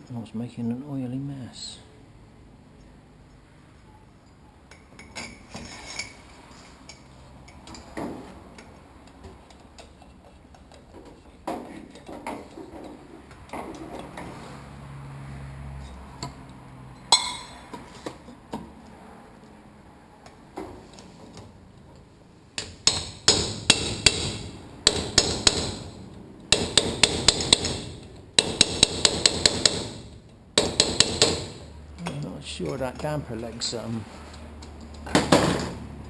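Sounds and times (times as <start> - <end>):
metal tools tapping and clinking: 4.2 - 14.1, 16.9 - 18.1, 31.9 - 33.8.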